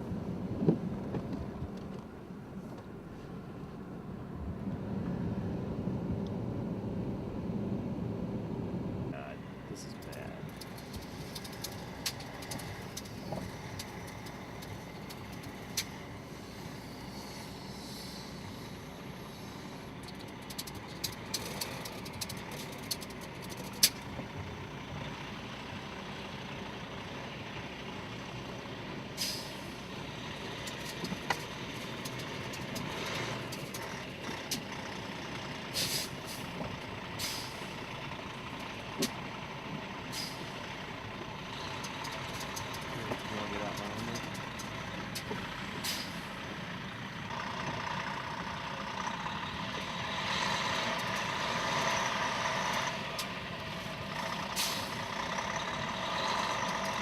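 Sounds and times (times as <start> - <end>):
truck engine running: 0.0 - 57.0.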